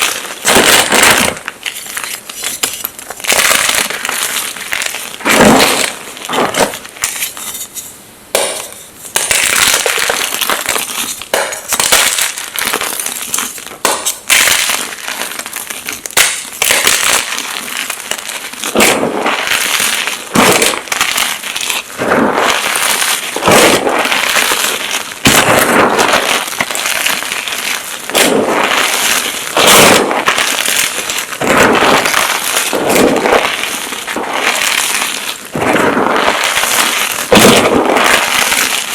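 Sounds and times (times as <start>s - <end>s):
chalk blocks crunching: 1.6s - 3.0s.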